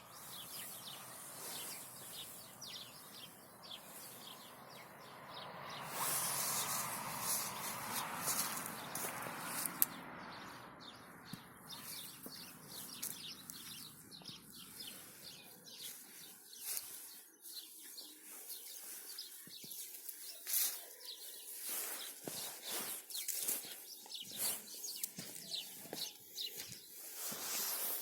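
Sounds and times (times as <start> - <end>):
small birds chirping: 0.0 - 28.0.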